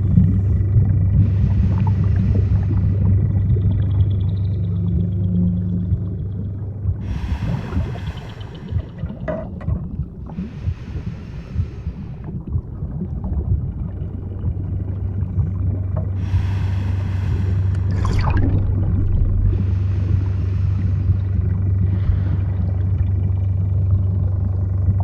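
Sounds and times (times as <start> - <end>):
underwater low rumble: 0.0 - 25.0
hissing burst: 16.2 - 20.9.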